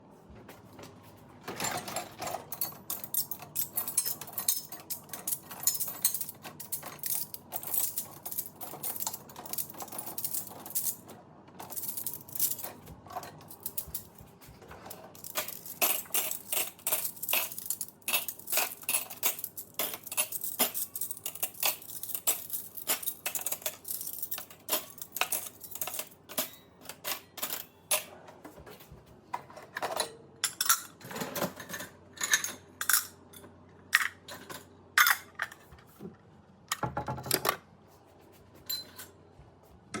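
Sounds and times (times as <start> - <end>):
dishes and cutlery clinking: 11.6 - 28.2, 38.6 - 39.2.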